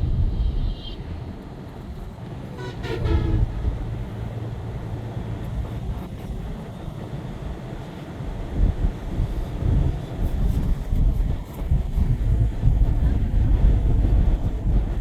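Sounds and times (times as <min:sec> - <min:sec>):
vehicle road and engine rumble: 0:00.0 - 0:15.0
vehicle horn: 0:02.5 - 0:04.0.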